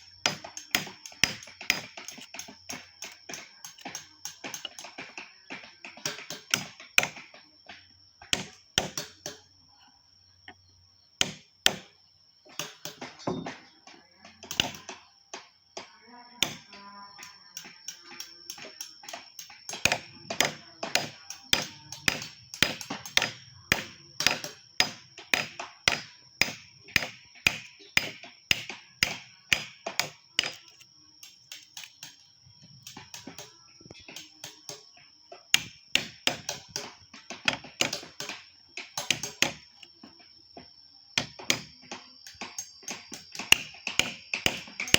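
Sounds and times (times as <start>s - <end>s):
mallet striking chisel on wood: 11.2s - 11.9s, 19.8s - 30.8s, 35.6s - 38.4s, 41.2s - 41.7s, 42.5s - 44.9s.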